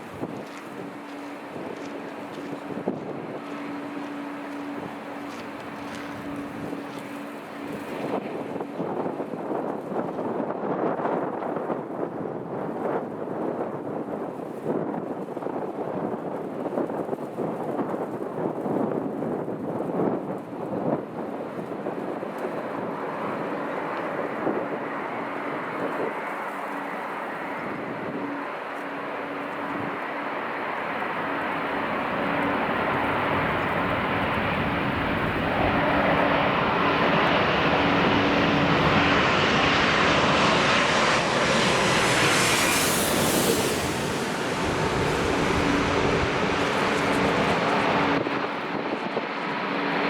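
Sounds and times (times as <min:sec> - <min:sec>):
jet airliner passing: 0:00.0 - 0:10.8, 0:21.0 - 0:50.0.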